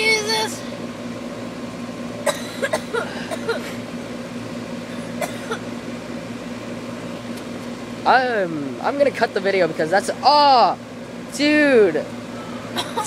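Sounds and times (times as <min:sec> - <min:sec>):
air conditioner humming: 0:00.0 - 0:13.0.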